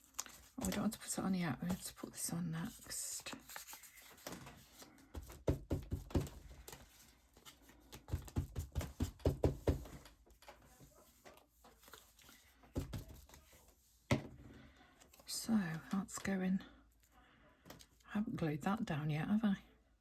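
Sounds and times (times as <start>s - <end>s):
paper rustling and sliding: 2.6s - 5.4s.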